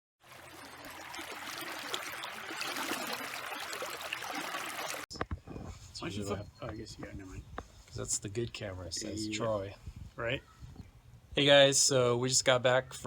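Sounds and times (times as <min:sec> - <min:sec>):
river flowing: 0:00.2 - 0:05.0
voices: 0:06.0 - 0:10.7.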